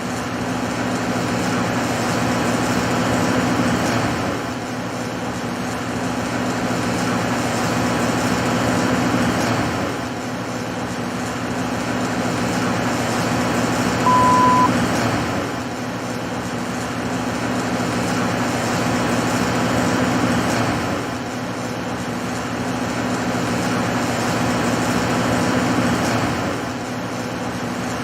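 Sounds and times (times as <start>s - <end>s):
short high beep: 14.0s - 14.7s.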